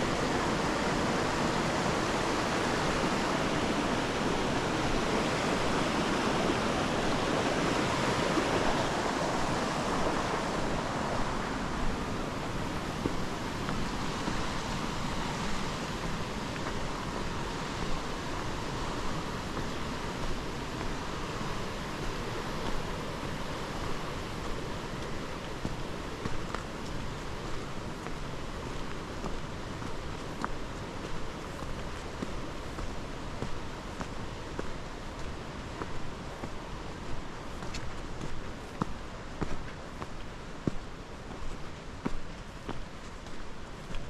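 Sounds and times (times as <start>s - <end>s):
creek rushing: 0.0s - 44.0s.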